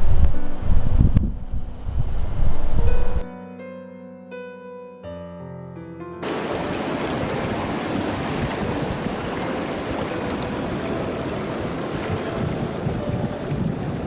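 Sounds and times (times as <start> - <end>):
wind noise on microphone: 0.0 - 3.2, 6.2 - 14.0
river water flowing: 1.6 - 3.2, 6.2 - 14.0.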